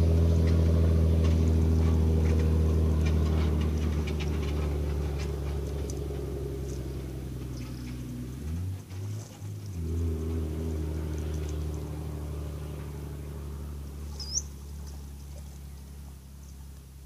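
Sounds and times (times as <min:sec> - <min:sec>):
engine running with low hum: 0:00.0 - 0:17.0
short high chirp: 0:14.1 - 0:14.5.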